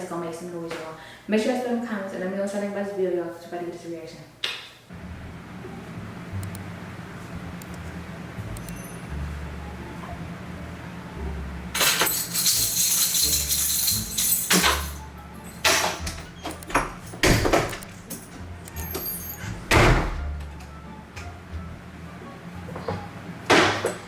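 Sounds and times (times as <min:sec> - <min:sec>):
loud jangling rattle: 0:11.8 - 0:19.6.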